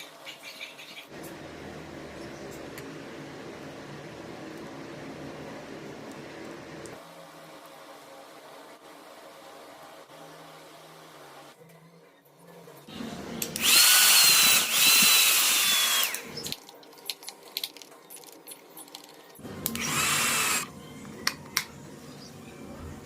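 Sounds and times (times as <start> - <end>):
small electric motor whining: 13.6 - 16.5, 19.7 - 20.7.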